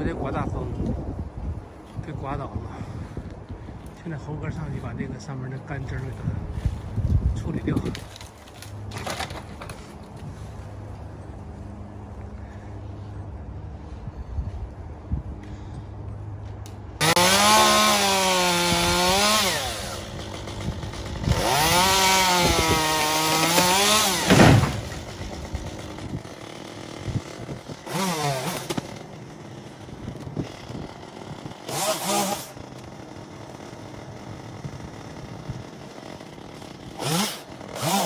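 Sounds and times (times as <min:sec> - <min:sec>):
chainsaw cutting branches: 0:05.7 - 0:10.5, 0:17.0 - 0:38.0.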